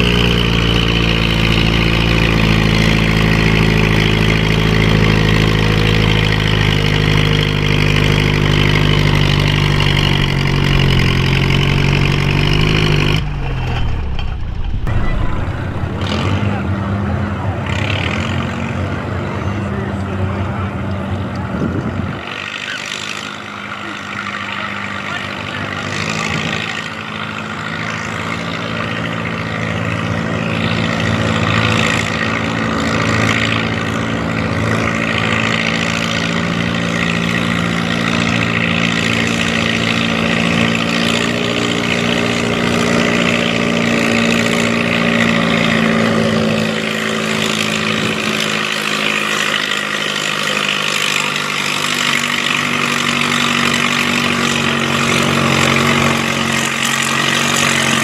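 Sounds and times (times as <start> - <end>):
tractor engine running hard: 0.0 - 58.0.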